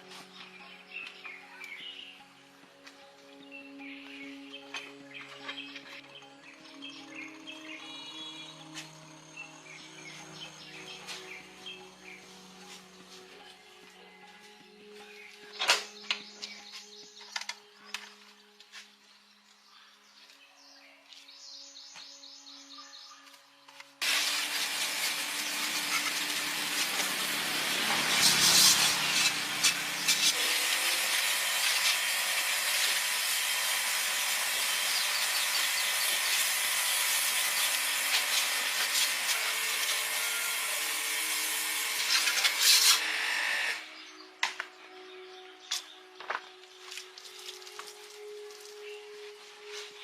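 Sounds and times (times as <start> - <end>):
tool rasping on material: 24.0 - 43.2.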